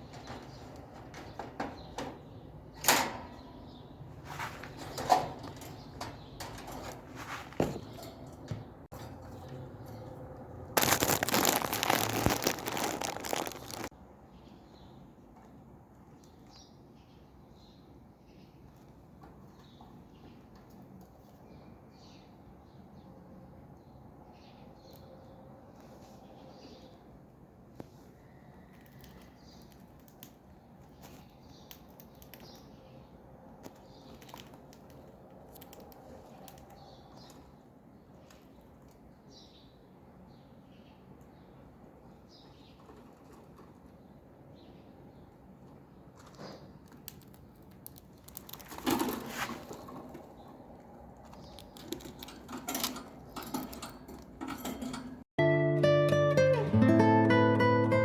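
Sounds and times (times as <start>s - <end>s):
pigeons pecking at grain: 45.7s - 55.0s.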